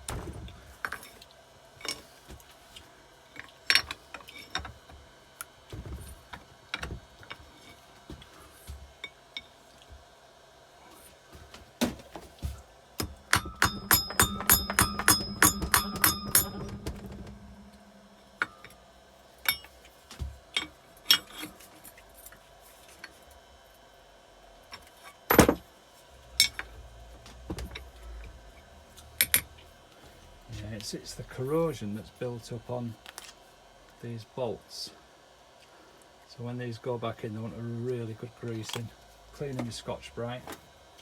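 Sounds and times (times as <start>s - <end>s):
sharp ringing metal taps: 13.0s - 18.8s
tools knocking and clinking on metal: 13.0s - 18.8s, 19.4s - 21.5s, 29.2s - 29.5s
loud metal clank: 13.4s - 18.8s.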